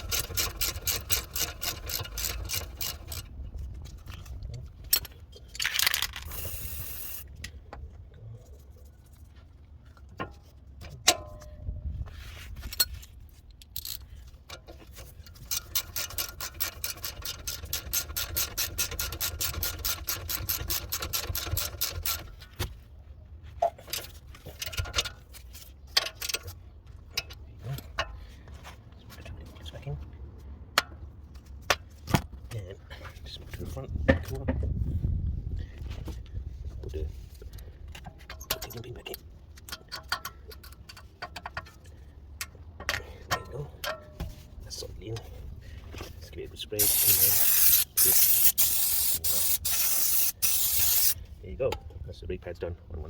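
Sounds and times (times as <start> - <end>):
ratchet wrench clicking: 0.0 - 3.3, 5.0 - 7.2, 13.6 - 14.1, 15.3 - 22.3, 46.8 - 51.2
short hiss: 46.8 - 51.2.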